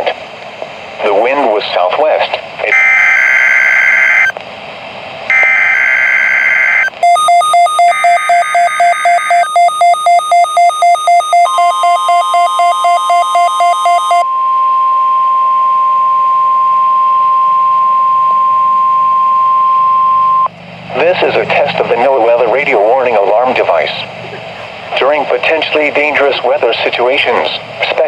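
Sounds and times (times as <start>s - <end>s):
rapidly pulsing alert beeps: 2.7s - 4.3s, 5.3s - 14.2s
screeching data bursts: 2.7s - 4.3s, 5.3s - 14.2s
steady warning alarm tone: 2.7s - 4.3s, 5.3s - 14.3s.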